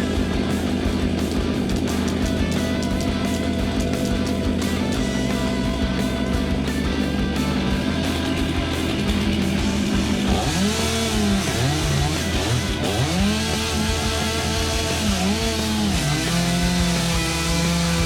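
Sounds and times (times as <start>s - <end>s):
background music: 0.0s - 18.0s
chainsaw cutting wood: 8.1s - 18.0s.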